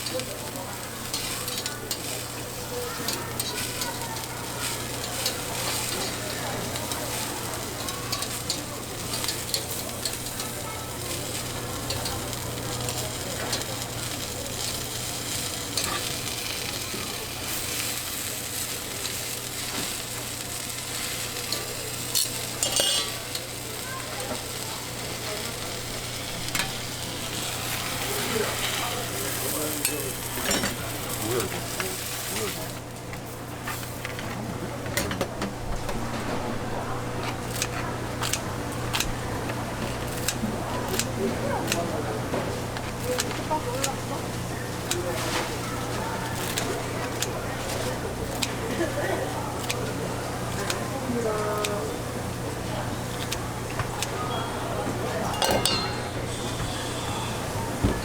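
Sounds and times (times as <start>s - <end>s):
food sizzling in a pan: 0.0s - 33.0s, 43.1s - 58.0s
cooking utensil clicks: 22.1s - 23.5s, 37.5s - 39.2s.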